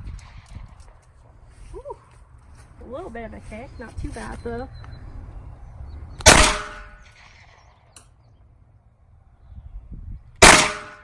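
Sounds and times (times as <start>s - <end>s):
pistol shots: 6.2s - 7.8s, 10.4s - 11.0s.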